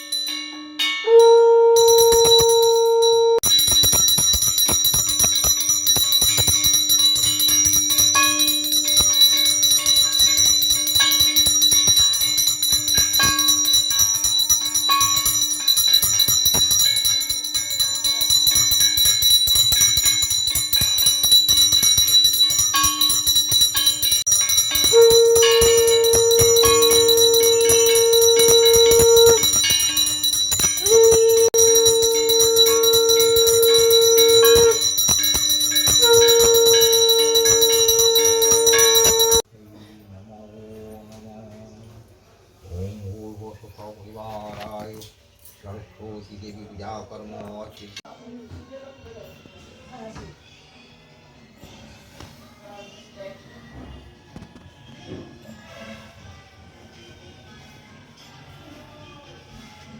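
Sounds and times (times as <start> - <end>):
hand bell ringing rapidly: 0.0 - 39.5
steady held tone: 1.1 - 39.4.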